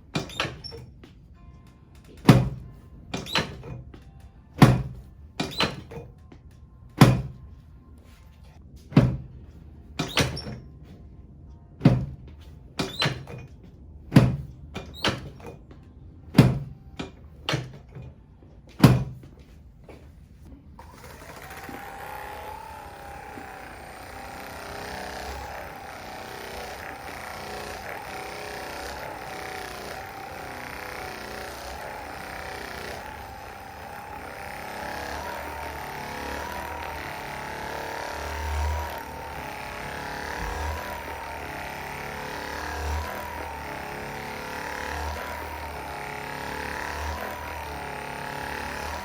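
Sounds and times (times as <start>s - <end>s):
dull thumps: 2.1s - 4.0s, 4.6s - 6.1s, 7.0s - 7.5s, 8.8s - 9.4s, 11.8s - 13.5s, 14.1s - 15.6s, 16.3s - 18.1s, 18.7s - 20.6s.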